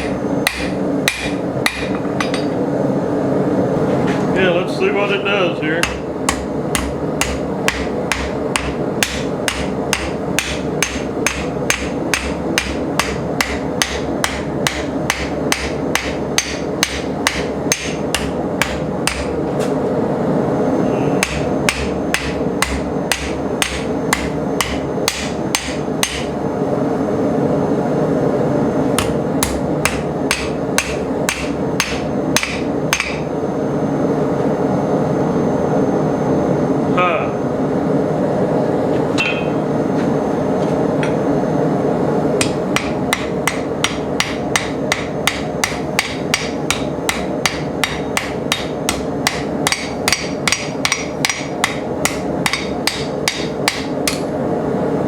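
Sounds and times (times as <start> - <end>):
hammer striking steel on anvil: 0.0 - 2.6, 5.8 - 19.4, 21.2 - 26.3, 29.0 - 33.3, 39.2 - 39.6, 42.4 - 54.3
steady background hum: 0.0 - 55.0.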